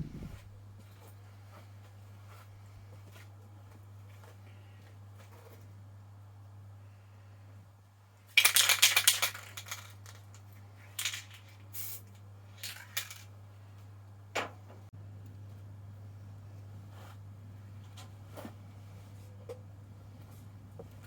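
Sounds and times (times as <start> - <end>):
steady low hum: 0.0 - 8.4, 9.1 - 21.0
spray can ball rattling: 8.3 - 10.3, 10.9 - 13.3
spray paint hissing: 11.8 - 12.0.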